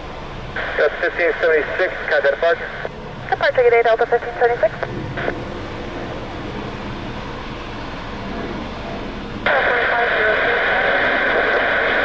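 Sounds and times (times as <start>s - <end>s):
radio background hiss: 0.5s - 5.4s, 9.4s - 12.0s
radio static burst: 0.6s - 5.3s, 9.5s - 12.0s
faint garbled radio speech: 0.6s - 5.4s, 9.5s - 12.0s.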